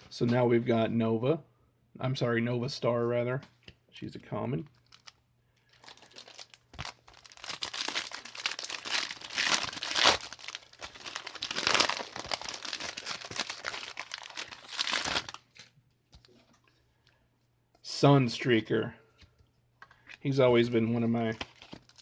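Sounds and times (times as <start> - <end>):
plastic wrapper crinkling and tearing: 4.7 - 16.7, 20.6 - 22.0.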